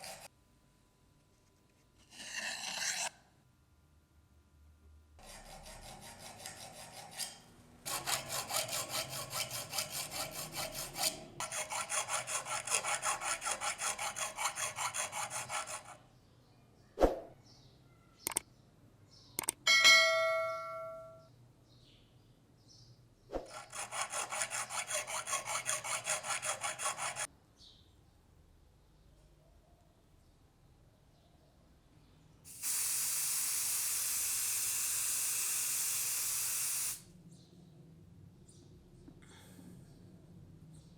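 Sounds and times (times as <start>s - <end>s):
file rasping on metal: 0.0s - 0.3s, 2.0s - 3.2s, 5.2s - 16.1s, 23.5s - 27.3s
sharp clicks: 18.2s - 18.5s, 19.4s - 19.6s
short metallic ring: 19.7s - 21.3s.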